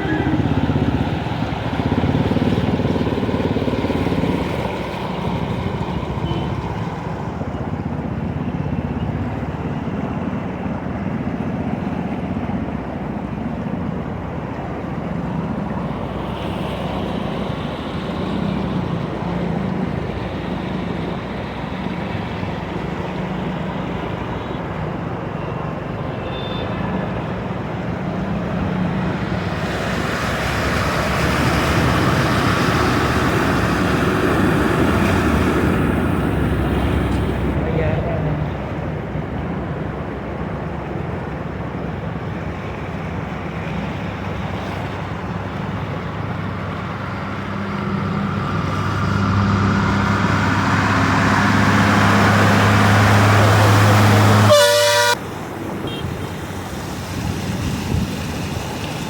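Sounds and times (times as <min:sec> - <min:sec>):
tyres through water on road: 0:00.0 - 0:59.0
wind buffeting microphone: 0:55.3 - 0:59.0.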